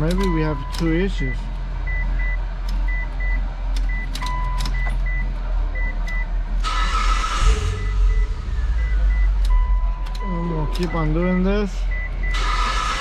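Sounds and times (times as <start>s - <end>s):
car warning chime beeps: 0.0s - 6.3s, 7.5s - 12.6s
steady low hum: 0.0s - 13.0s
sharp clicks: 3.7s - 4.8s.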